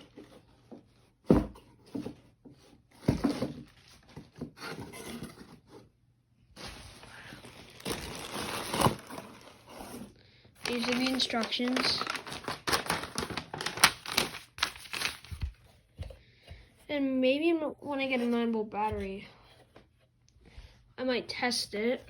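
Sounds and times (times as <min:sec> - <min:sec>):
paper rustling: 0:06.6 - 0:15.8.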